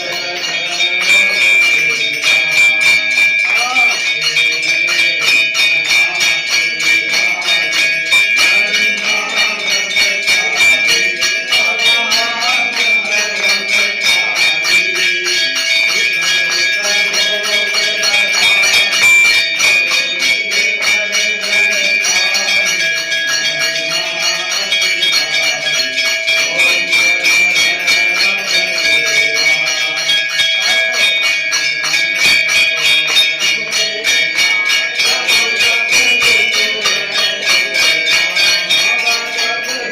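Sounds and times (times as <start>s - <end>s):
temple bells ringing rapidly: 0.0s - 39.9s.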